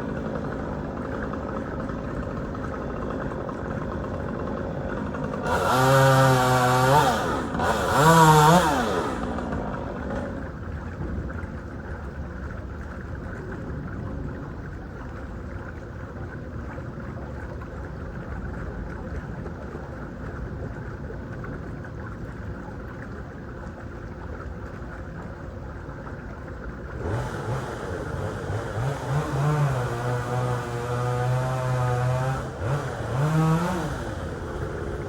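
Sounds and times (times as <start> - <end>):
low engine rumble: 0.0 - 35.0
engine revving: 5.4 - 10.3, 27.0 - 35.0.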